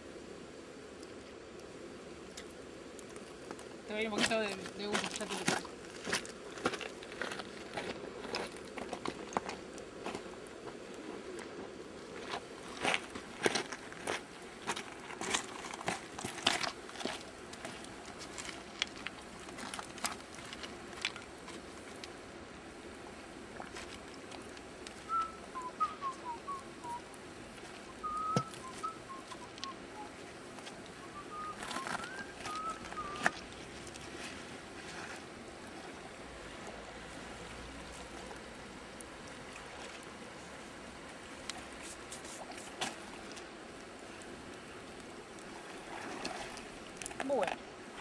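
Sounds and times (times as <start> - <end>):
campfire crackling and popping: 0.0 - 48.0
river rushing: 12.2 - 48.0.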